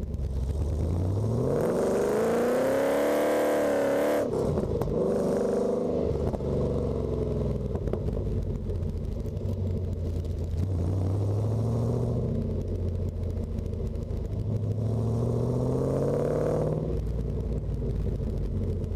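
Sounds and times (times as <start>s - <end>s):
car engine accelerating: 0.0s - 18.9s.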